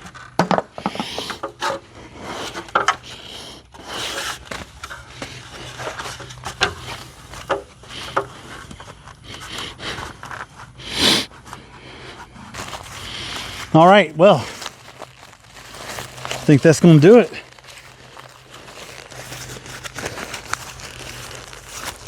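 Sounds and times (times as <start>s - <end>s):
scraping and rubbing on a wall: 0.0s - 22.0s.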